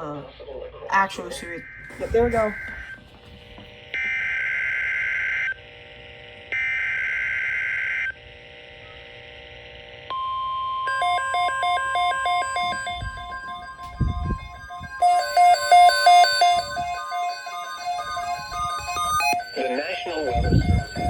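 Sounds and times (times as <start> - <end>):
beeping melody: 10.9 - 21.0
steady alert tone: 10.9 - 21.0.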